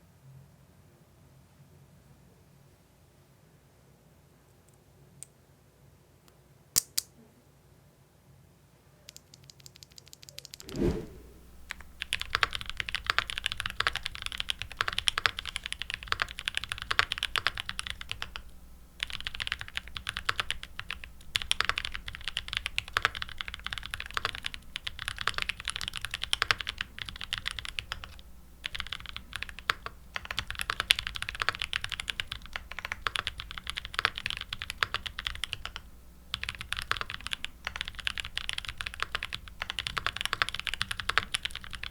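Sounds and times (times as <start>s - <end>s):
fast typing on mechanical keyboard: 9.1s - 10.6s, 11.7s - 41.9s.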